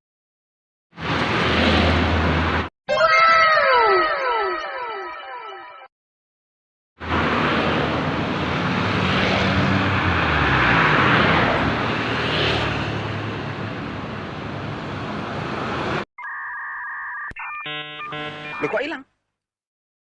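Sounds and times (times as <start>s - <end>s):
loud vehicle engine rushing: 7.0s - 16.0s.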